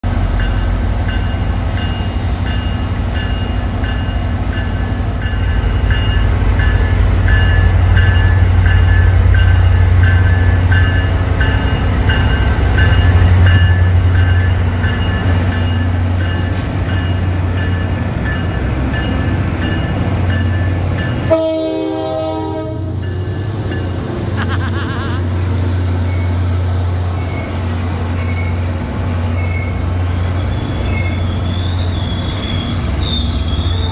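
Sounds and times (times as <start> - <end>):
diesel locomotive engine hum: 0.0 - 33.9
locomotive bell ringing: 0.1 - 24.3
locomotive horn chord: 21.2 - 23.0.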